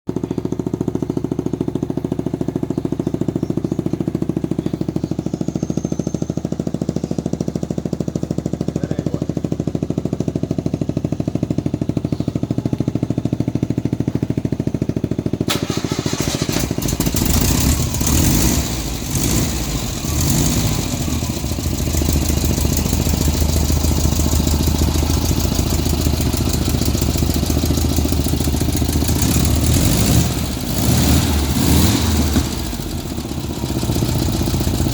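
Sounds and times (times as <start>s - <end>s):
small engine running: 15.5s - 34.9s.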